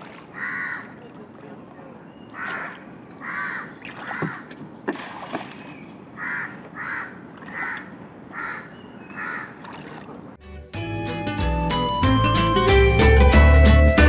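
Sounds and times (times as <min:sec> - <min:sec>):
crow cawing: 0:00.3 - 0:01.0, 0:02.3 - 0:04.5, 0:06.2 - 0:09.9.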